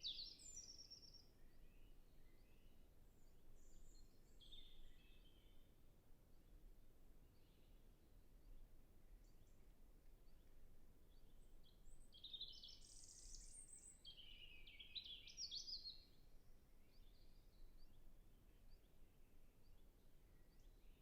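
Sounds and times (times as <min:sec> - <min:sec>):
robin singing: 0:00.0 - 0:05.7, 0:08.5 - 0:19.0.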